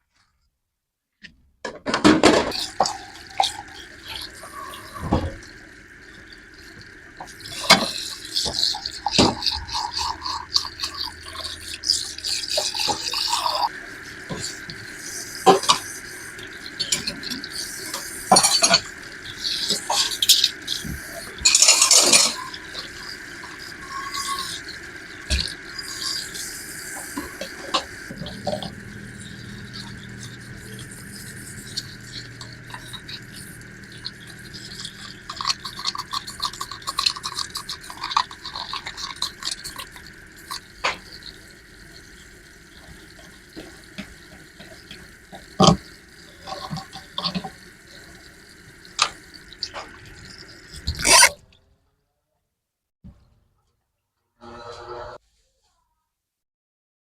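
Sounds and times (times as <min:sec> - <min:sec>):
dishes and utensils clattering: 0:18.3 - 0:26.4
steady background tone: 0:20.2 - 0:39.0.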